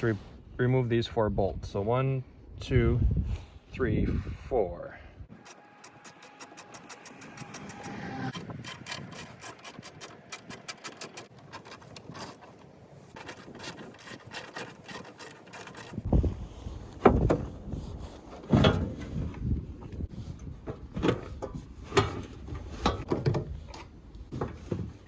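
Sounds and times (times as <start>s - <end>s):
knocks and scrapes: 5.3s - 16.1s
ratchet wrench clicking: 5.4s - 12.6s.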